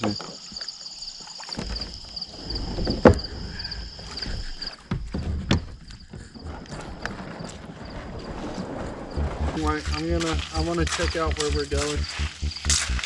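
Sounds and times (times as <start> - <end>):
insects chirping: 0.0 - 13.0
low rumble: 6.4 - 13.0.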